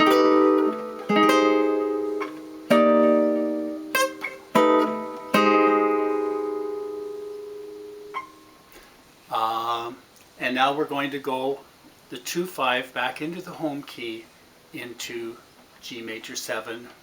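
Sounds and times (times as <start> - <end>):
guitar playing jazz chords: 0.0 - 8.9.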